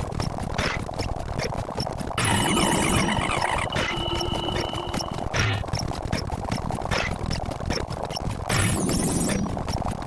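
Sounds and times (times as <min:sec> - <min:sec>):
held high tone: 0:03.7 - 0:05.3.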